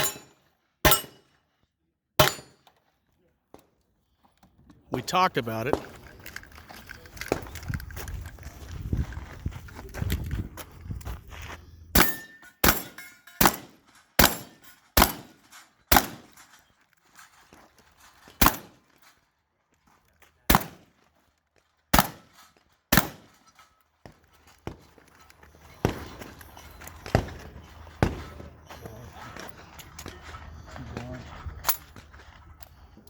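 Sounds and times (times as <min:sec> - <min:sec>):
gunshots: 0:00.0 - 0:01.2, 0:02.2 - 0:02.6, 0:12.0 - 0:16.4, 0:18.4 - 0:18.8, 0:20.5 - 0:20.9, 0:21.9 - 0:22.3, 0:22.9 - 0:23.4, 0:25.8 - 0:26.3, 0:27.0 - 0:28.5.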